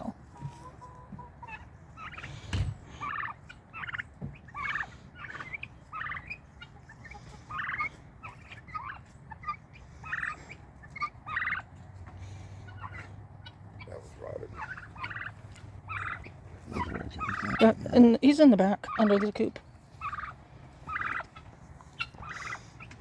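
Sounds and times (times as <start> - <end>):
poultry calling: 0.0 - 23.0
thump: 2.5 - 2.8.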